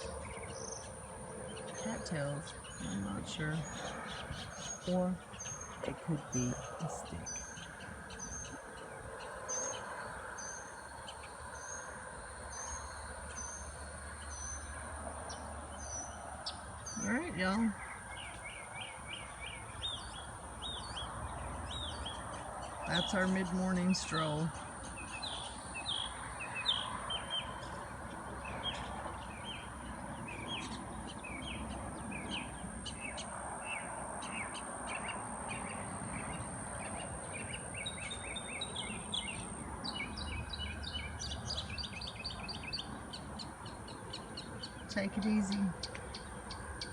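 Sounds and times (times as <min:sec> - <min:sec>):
bird chirping: 0:00.0 - 0:46.9
insects droning: 0:00.0 - 0:46.9
steady outdoor hiss: 0:00.0 - 0:46.9.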